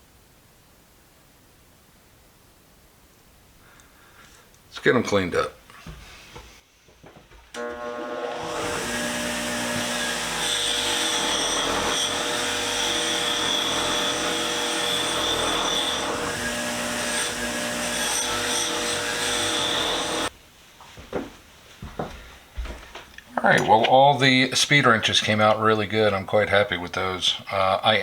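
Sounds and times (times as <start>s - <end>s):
power tool running: 7.5s - 20.3s.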